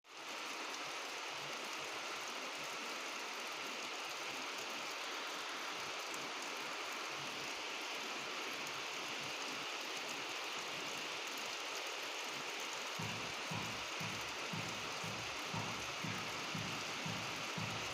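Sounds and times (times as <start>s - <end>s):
rain falling: 0.1s - 17.9s.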